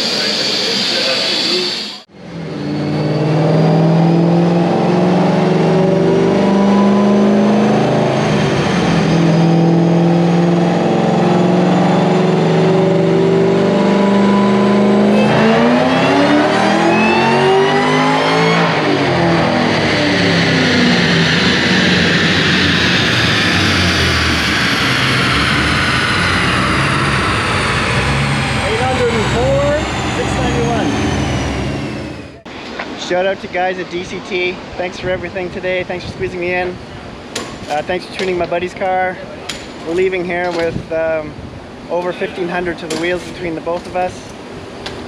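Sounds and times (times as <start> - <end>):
car engine revving on dyno: 0.0 - 32.5.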